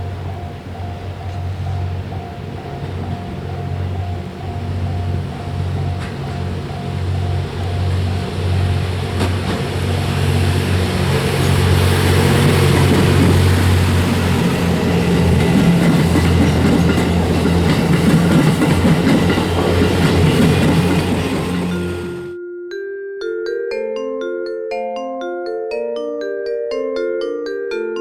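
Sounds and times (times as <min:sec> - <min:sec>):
wheels clattering over rails: 0:00.0 - 0:22.3
diesel engine drone: 0:00.0 - 0:22.4.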